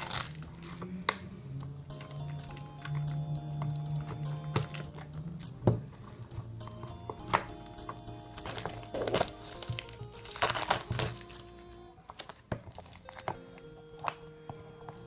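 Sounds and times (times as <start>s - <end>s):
plastic shrink wrap crinkling: 0.0s - 1.2s, 8.4s - 13.4s
background music: 0.0s - 15.0s.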